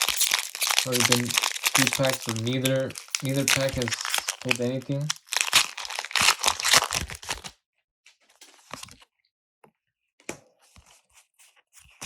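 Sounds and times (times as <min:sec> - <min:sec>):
foil wrapper tearing and crinkling: 0:00.0 - 0:07.6.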